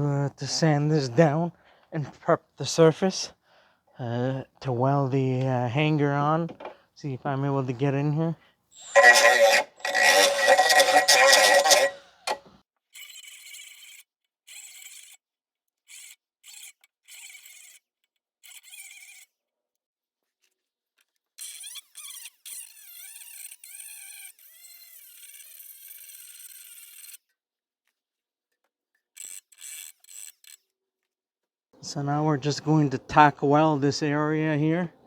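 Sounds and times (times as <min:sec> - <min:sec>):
wavering squeal: 0:08.8 - 0:12.1
metal being sanded: 0:08.8 - 0:12.4.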